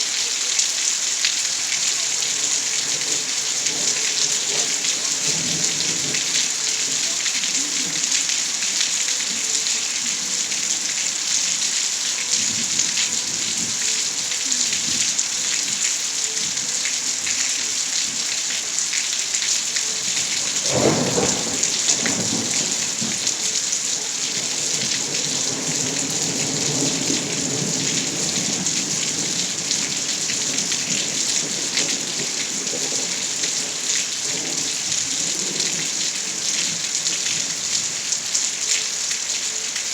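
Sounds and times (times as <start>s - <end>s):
steady rain falling: 0.0s - 39.9s
thunder rumbling: 20.0s - 36.0s.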